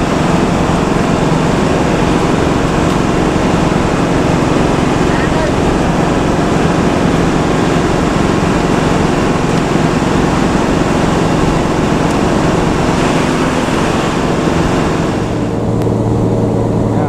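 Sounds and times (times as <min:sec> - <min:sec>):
bus engine running: 0:00.0 - 0:17.0
road noise: 0:00.0 - 0:17.0.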